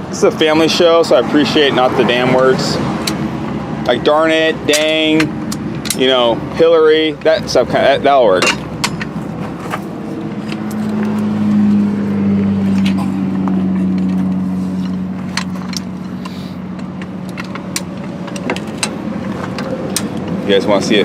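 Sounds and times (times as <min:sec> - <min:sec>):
vehicle engine droning: 0:00.0 - 0:21.0.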